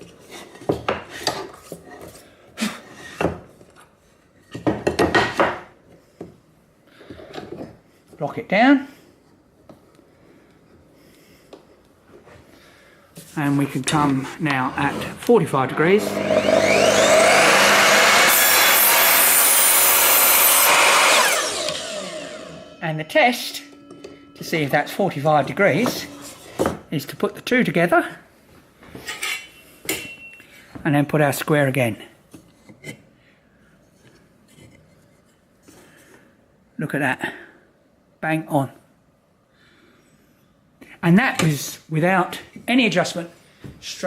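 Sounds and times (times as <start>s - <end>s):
saw blade cutting wood: 13.9s - 26.7s
saw motor whine: 14.7s - 26.5s.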